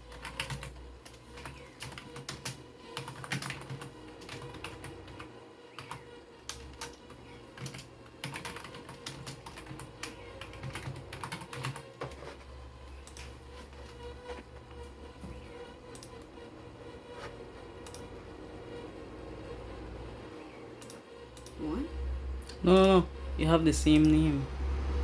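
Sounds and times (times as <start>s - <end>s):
faint electrical hum: 0.0s - 25.0s
typing on computer keyboard: 0.1s - 12.2s, 20.8s - 21.6s.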